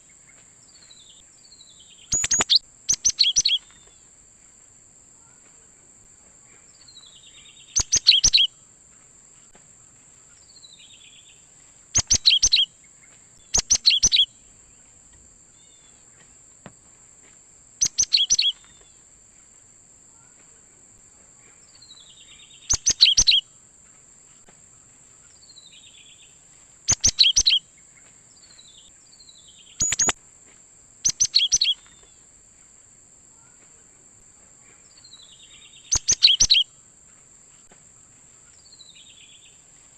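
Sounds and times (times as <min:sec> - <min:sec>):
steady high-pitched hiss: 0:00.0 - 0:39.9
bird calling in sharp notes: 0:02.1 - 0:03.7, 0:07.7 - 0:08.5, 0:12.0 - 0:12.7, 0:13.5 - 0:14.3, 0:17.8 - 0:18.7, 0:22.7 - 0:23.4, 0:26.9 - 0:27.6, 0:29.8 - 0:30.2, 0:31.1 - 0:31.8, 0:35.9 - 0:36.6.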